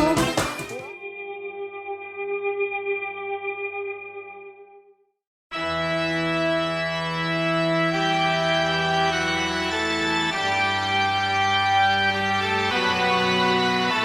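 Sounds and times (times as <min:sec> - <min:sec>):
background music: 0:00.0 - 0:04.8, 0:05.6 - 0:14.0
slow organ-like chords: 0:05.6 - 0:14.0.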